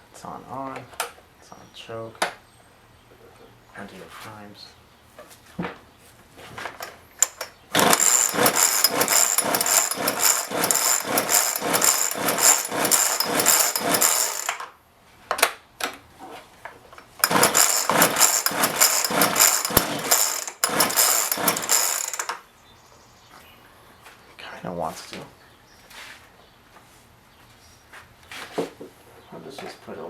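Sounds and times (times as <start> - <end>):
chainsaw engine running roughly: 7.2 - 14.7, 17.2 - 22.4.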